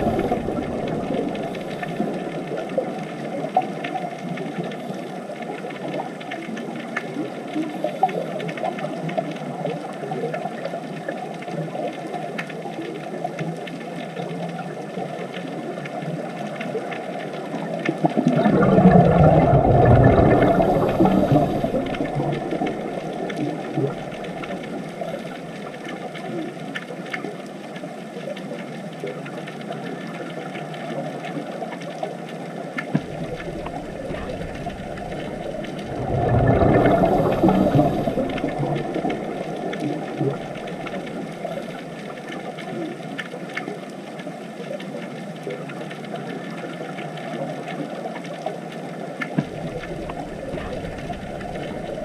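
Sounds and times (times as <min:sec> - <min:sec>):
bubbling exhalation underwater: 0:00.0 - 0:03.8, 0:18.0 - 0:25.6, 0:33.0 - 0:42.2, 0:49.4 - 0:52.0
steady underwater hiss: 0:00.0 - 0:10.2, 0:11.0 - 0:52.0.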